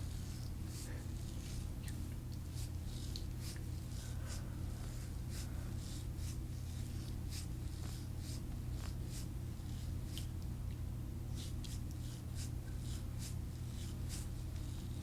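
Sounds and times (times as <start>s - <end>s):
steady low hum: 0.0s - 15.0s
hands rubbing skin and clothing: 11.4s - 15.0s.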